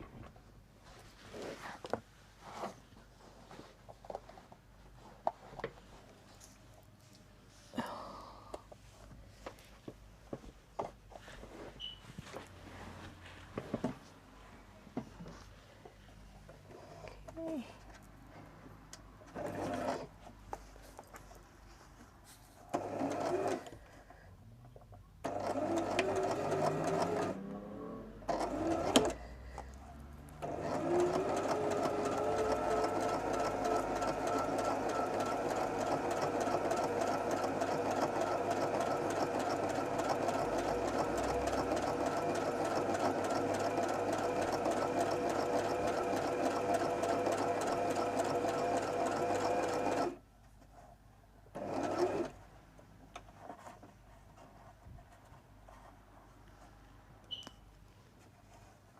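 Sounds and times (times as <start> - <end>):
sewing machine stitching: 19.3 - 20.1, 22.7 - 23.7, 25.2 - 29.2, 30.4 - 50.2, 51.5 - 52.4.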